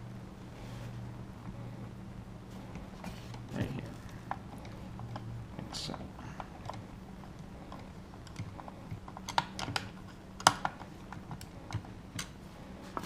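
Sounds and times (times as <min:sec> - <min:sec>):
lock parts clicking and tapping: 0:05.9 - 0:12.4.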